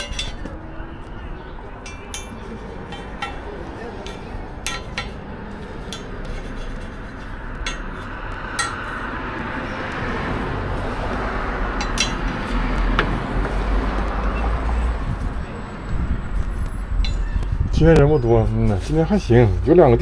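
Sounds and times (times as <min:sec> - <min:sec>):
metal utensils clinking: 0:00.0 - 0:00.6, 0:01.8 - 0:05.2, 0:07.6 - 0:08.9, 0:11.8 - 0:12.4.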